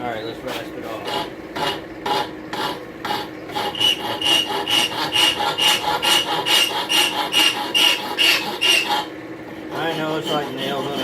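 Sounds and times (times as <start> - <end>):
hand file rasping on steel: 0.5 - 11.0
high squeak of file strokes: 3.5 - 9.1, 9.7 - 11.0.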